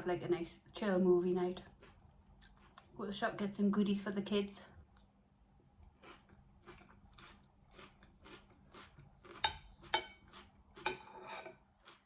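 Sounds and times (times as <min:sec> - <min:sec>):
chewing sandwich: 0:05.9 - 0:12.0.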